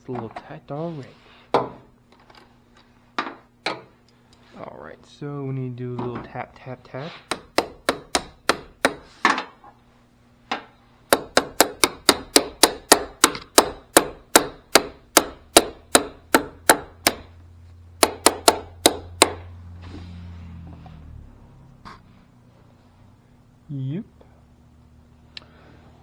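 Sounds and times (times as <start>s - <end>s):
hammer tapping battery terminal: 7.3s - 9.1s, 11.1s - 17.3s, 18.0s - 19.4s.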